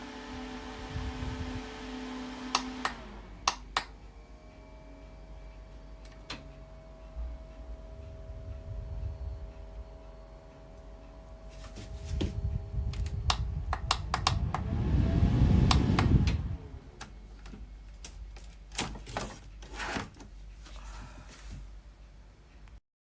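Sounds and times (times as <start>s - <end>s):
low rumble: 6.8s - 17.9s
plastic desk fan clicks and knocks: 12.9s - 14.6s.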